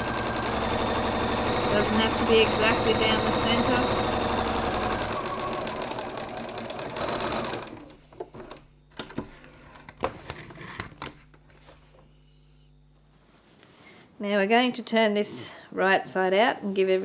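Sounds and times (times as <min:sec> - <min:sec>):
sewing machine stitching: 0:00.0 - 0:08.6.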